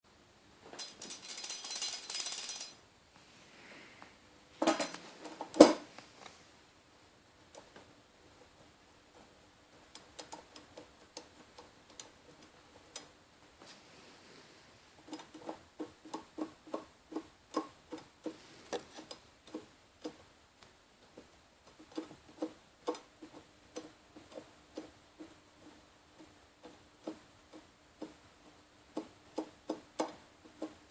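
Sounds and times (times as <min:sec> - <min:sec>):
brake disc rattling: 0:00.8 - 0:02.8.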